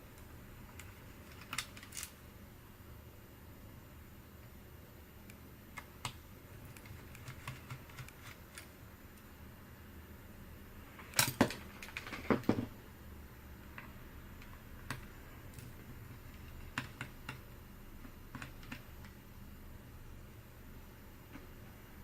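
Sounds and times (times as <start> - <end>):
laptop parts clicking: 0.7 - 2.1, 5.8 - 8.7, 14.4 - 19.2.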